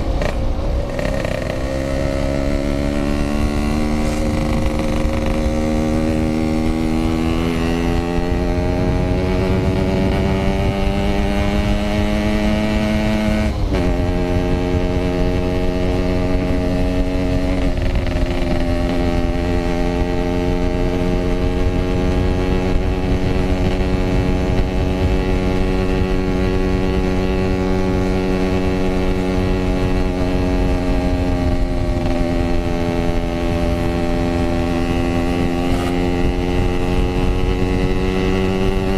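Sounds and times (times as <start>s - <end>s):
two-stroke motorcycle engine running: 0.0s - 38.9s.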